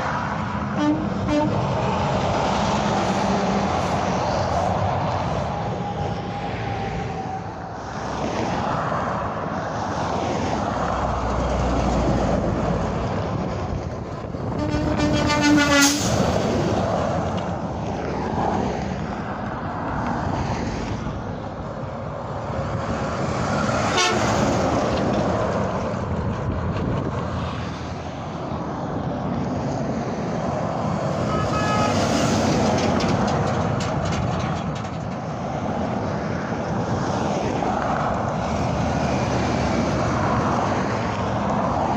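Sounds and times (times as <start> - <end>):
highway traffic noise: 0.0 - 41.9
truck air horn blast: 0.7 - 1.6, 14.5 - 16.2, 23.8 - 24.4, 31.2 - 32.3.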